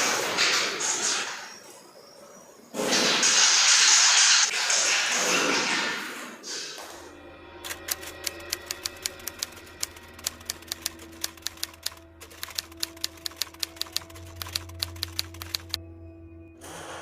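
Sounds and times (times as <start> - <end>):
rapid sharp clicking: 7.6 - 15.8.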